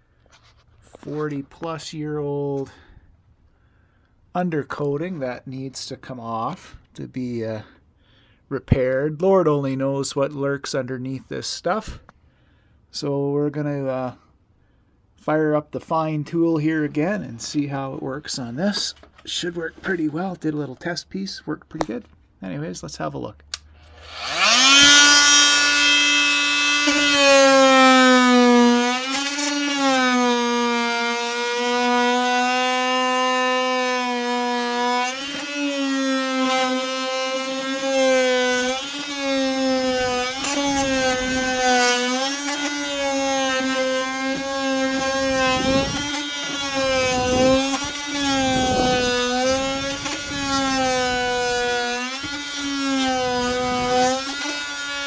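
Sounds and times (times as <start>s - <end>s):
blade scraping coating: 23.9s - 55.0s
oscillating multi-tool buzzing: 23.9s - 55.0s.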